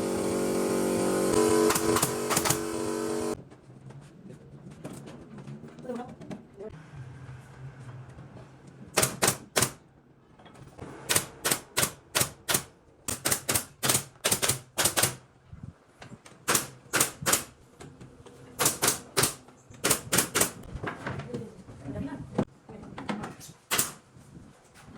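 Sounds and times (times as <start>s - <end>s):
nail gun firing into wood: 1.6s - 2.8s, 9.0s - 9.8s, 11.0s - 15.2s, 16.4s - 17.6s, 18.6s - 20.7s, 23.7s - 24.0s.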